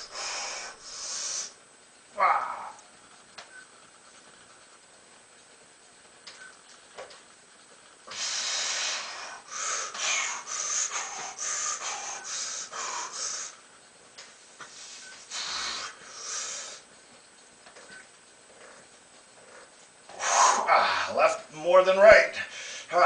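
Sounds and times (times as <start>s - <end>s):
man breathing hard: 0.0s - 1.6s, 8.1s - 13.6s, 14.6s - 16.9s, 22.4s - 22.9s.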